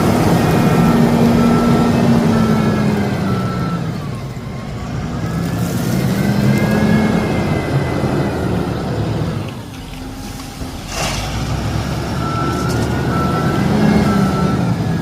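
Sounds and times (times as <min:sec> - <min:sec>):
heavy machine engine under load: 0:00.0 - 0:15.0
reversing alarm beeps: 0:00.3 - 0:04.5, 0:12.1 - 0:15.0.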